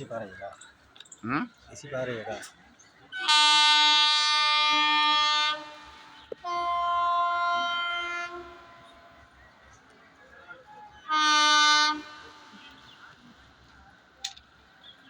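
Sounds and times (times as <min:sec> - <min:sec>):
low rumble of train: 0:00.0 - 0:15.0
locomotive horn blast: 0:03.1 - 0:09.2, 0:11.0 - 0:12.9.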